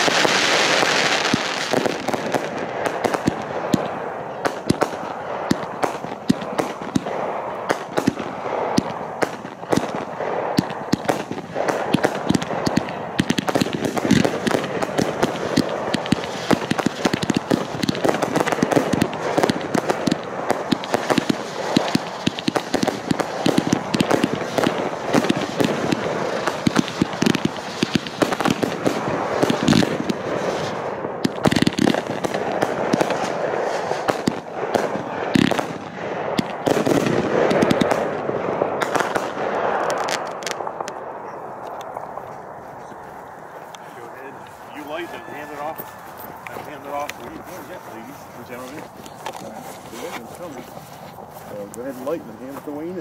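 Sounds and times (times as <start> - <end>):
fireworks crackling and popping: 0.0 - 53.0.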